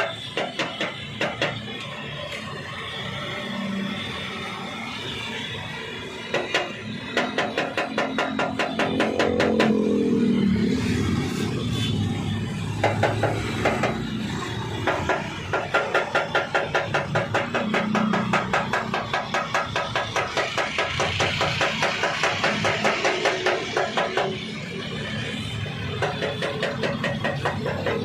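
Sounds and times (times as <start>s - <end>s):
hammer tapping on metal: 0.0s - 1.9s, 6.3s - 9.9s, 12.8s - 14.1s, 14.8s - 24.4s, 26.0s - 28.0s.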